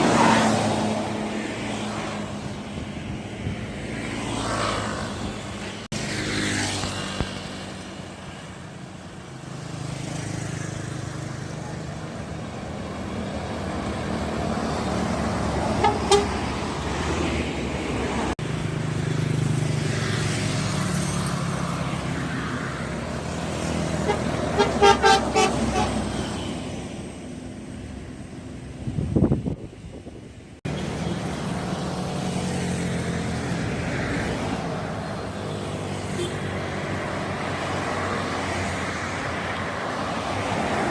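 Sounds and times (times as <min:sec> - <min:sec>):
bus engine rumble: 0:10.5 - 0:19.0, 0:21.0 - 0:37.9
bus horn toots: 0:15.6 - 0:16.6, 0:24.0 - 0:26.6.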